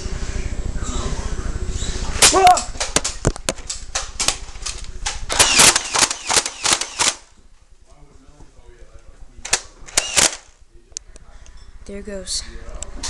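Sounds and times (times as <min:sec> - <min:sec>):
toy blasters firing plastic clacks: 0:03.9 - 0:07.3, 0:09.5 - 0:10.5.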